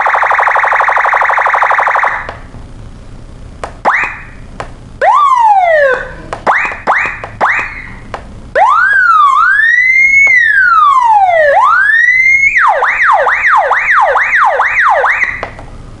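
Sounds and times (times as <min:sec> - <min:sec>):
police siren wailing and yelping: 0:00.0 - 0:02.3, 0:05.0 - 0:08.0, 0:08.6 - 0:15.5.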